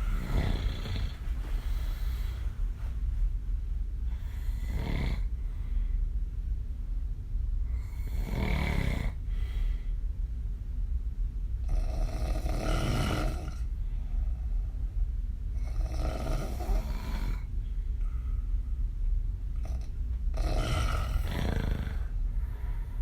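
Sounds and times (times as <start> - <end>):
woman snoring: 0.0 - 1.2, 4.2 - 5.3, 7.8 - 9.2, 11.7 - 13.7, 15.6 - 17.5, 19.7 - 22.1
steady low hum: 0.0 - 23.0.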